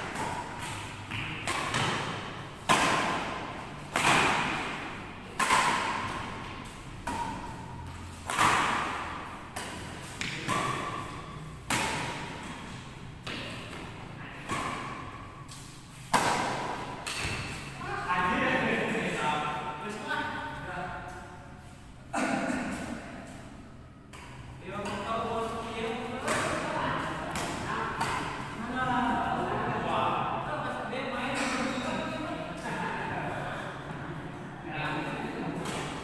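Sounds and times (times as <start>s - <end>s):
racket striking shuttlecock: 0.0s - 17.7s, 26.2s - 28.6s, 35.6s - 36.0s.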